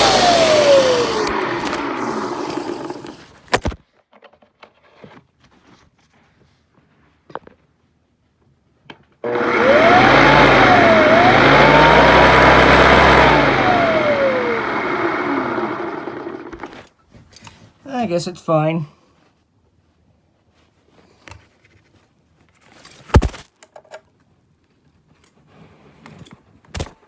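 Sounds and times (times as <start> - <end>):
vacuum cleaner motor whine: 0.0 - 3.4, 9.2 - 16.8.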